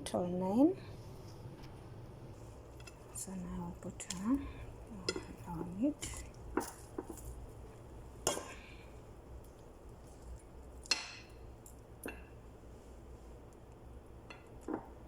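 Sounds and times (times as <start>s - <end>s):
faint low hum: 0.0s - 15.0s
pot and utensils clinking: 2.8s - 7.4s.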